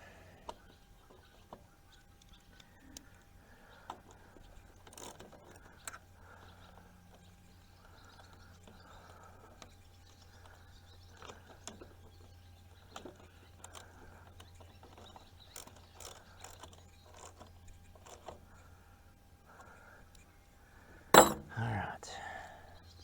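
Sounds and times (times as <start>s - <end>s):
hand tools clicking and knocking: 21.2s - 21.6s.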